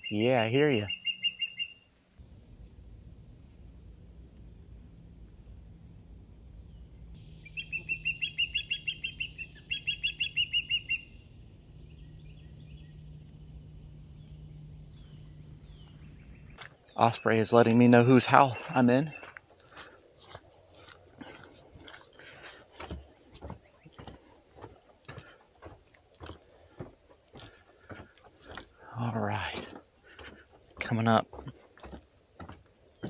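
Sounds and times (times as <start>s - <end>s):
osprey chirping calls: 2.2s - 16.6s.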